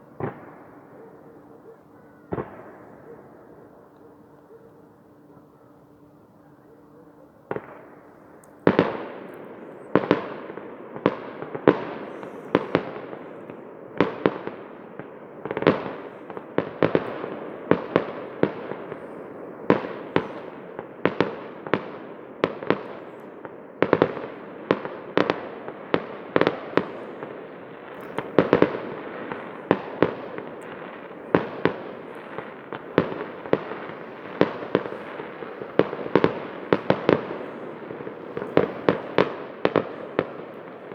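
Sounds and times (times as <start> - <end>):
fireworks bursting with sharp bangs: 0.0 - 4.6, 7.5 - 40.9.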